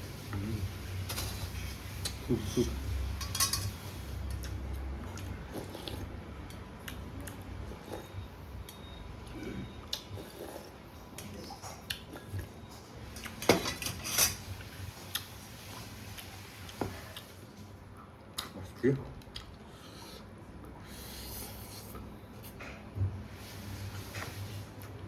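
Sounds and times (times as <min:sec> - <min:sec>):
utensils clinking against bowl: 0:03.1 - 0:03.8, 0:13.2 - 0:14.5.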